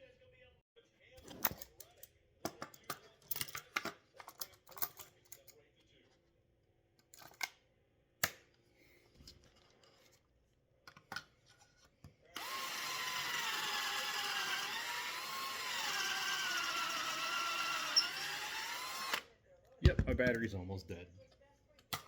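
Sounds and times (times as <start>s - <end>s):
cordless drill whining: 12.4s - 19.3s.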